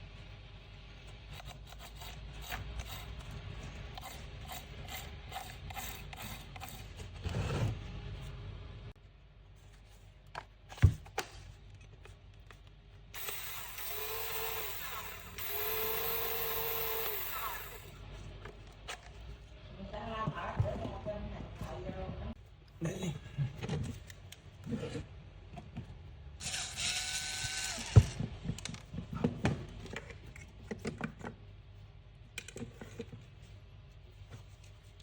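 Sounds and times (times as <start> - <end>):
small power tool motor: 13.2 - 18.0, 26.4 - 28.2.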